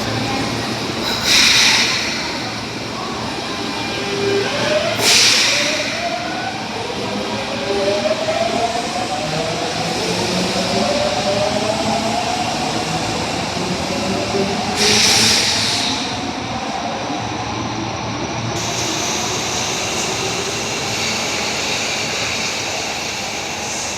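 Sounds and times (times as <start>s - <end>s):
subway train running: 0.0s - 23.9s
loud hiss: 1.0s - 3.0s, 14.7s - 16.3s.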